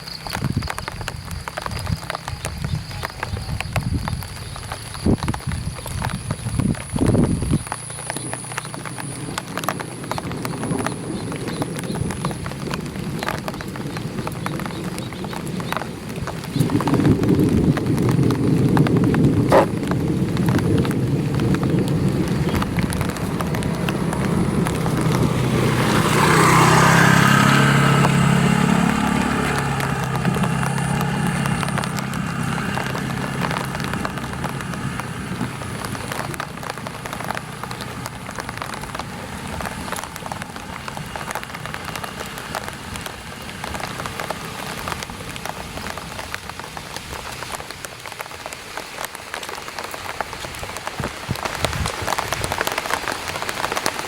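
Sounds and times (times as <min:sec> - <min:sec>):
rain pattering on an umbrella: 0:00.0 - 0:54.0
vehicle passing by: 0:19.0 - 0:46.3.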